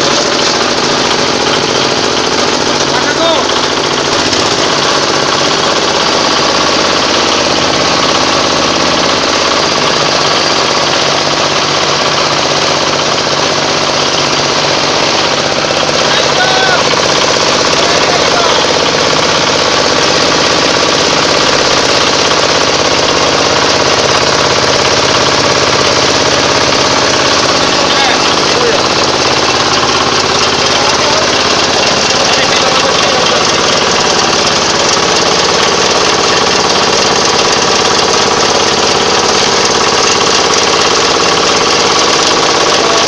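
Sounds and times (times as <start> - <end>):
compost grinder machine clattering: 0.0 - 43.0.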